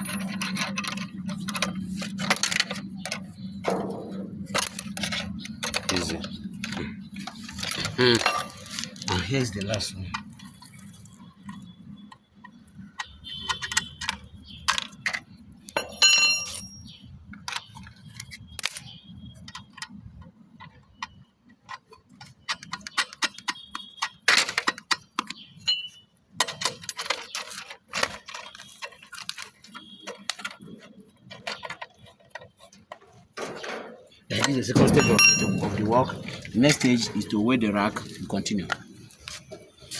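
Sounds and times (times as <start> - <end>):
wrench clinking on metal: 0.0 - 9.0, 14.9 - 17.0, 22.2 - 28.8, 33.4 - 38.2.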